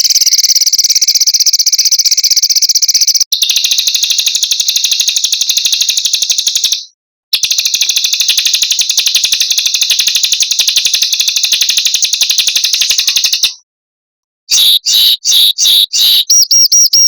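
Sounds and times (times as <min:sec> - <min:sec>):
high-pitched bird trill: 0:00.0 - 0:03.6, 0:12.2 - 0:13.5, 0:14.5 - 0:17.0.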